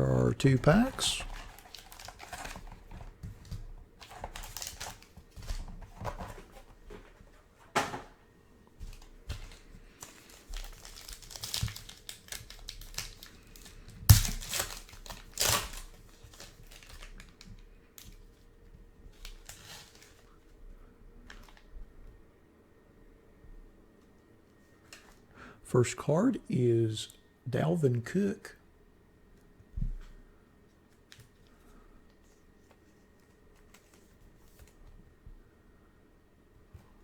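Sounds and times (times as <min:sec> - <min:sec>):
card pack wrappers crinkling: 0:00.2 - 0:02.9, 0:04.0 - 0:06.3, 0:09.4 - 0:17.5
wrapper ripping: 0:00.7 - 0:02.6, 0:04.0 - 0:05.1, 0:10.2 - 0:17.4.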